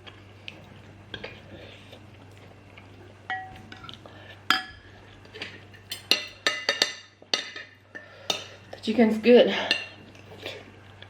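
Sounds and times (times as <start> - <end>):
cutlery clinking against a dish: 3.3 - 4.8, 5.4 - 8.6.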